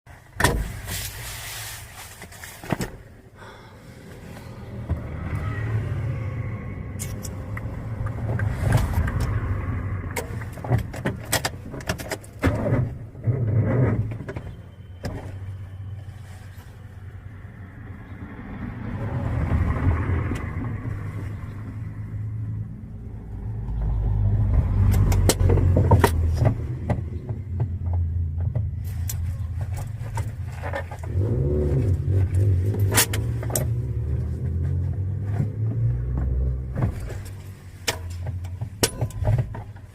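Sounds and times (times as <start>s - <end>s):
car engine revving unevenly: 17.4s - 38.8s
sharp clicks and knocks: 24.5s - 31.2s, 35.3s - 39.9s.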